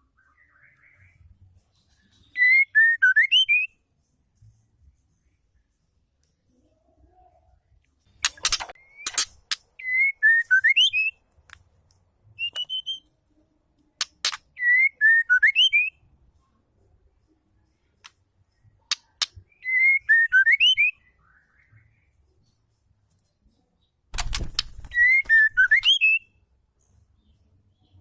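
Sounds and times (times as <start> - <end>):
bird whistled phrase: 2.4 - 3.7, 19.6 - 21.0, 24.9 - 26.2
bird clicking chips: 8.1 - 10.8, 14.0 - 14.5, 24.2 - 26.1.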